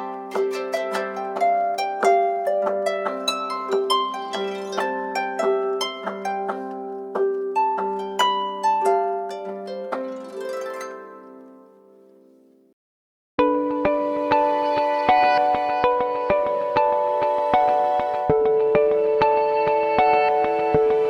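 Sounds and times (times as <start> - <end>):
plucked harp-like ringtone melody: 0.0 - 12.3, 13.8 - 21.0.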